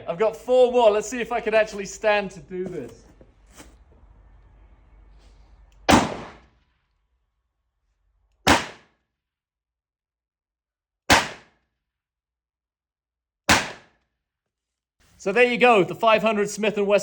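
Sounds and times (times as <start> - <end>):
revolver shots: 5.9 - 6.6, 8.4 - 8.9, 11.1 - 11.6, 13.5 - 14.0.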